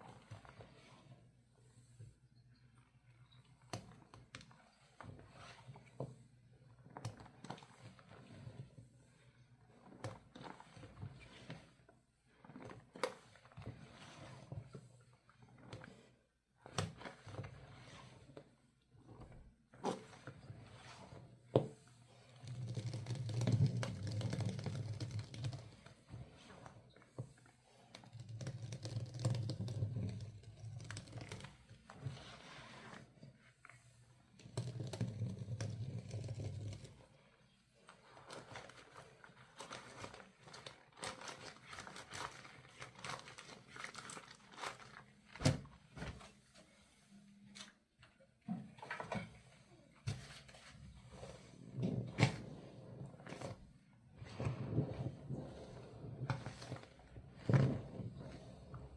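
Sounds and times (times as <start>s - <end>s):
hands squishing wet soapy laundry: 0.0s - 1.8s, 2.6s - 58.9s.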